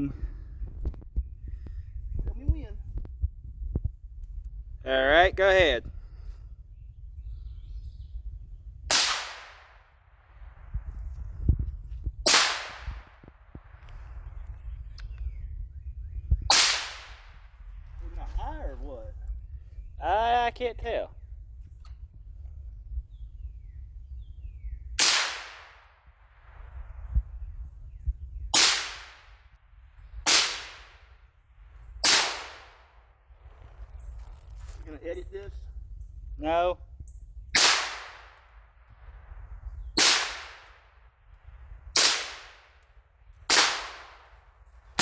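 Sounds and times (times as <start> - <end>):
rifle shots with echo: 8.9 - 10.0, 12.2 - 13.8, 16.5 - 17.5, 25.0 - 26.8, 28.5 - 29.4, 30.2 - 31.1, 32.0 - 33.1, 37.6 - 38.6, 40.0 - 41.0, 42.0 - 42.8, 43.5 - 45.0.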